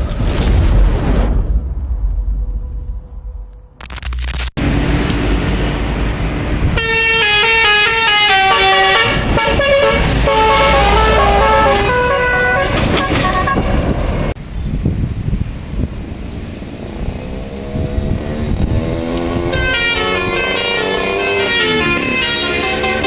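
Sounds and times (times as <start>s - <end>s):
bus engine running: 4.6s - 23.0s
multi-tone horn melody: 6.7s - 14.0s, 19.1s - 23.0s.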